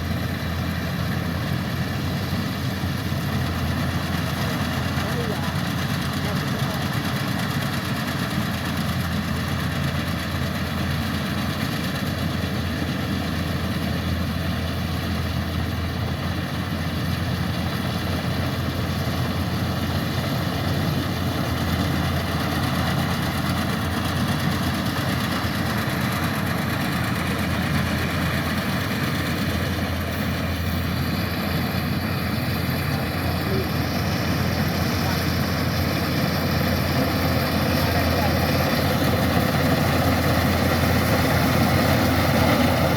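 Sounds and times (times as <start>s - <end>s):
diesel engine droning: 0.0s - 42.9s.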